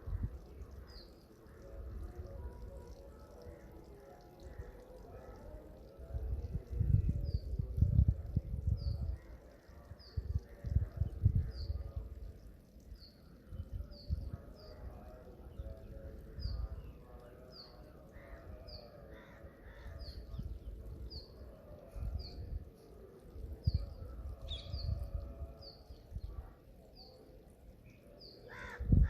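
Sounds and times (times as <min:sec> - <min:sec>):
faint bird calls: 0:28.0 - 0:29.0.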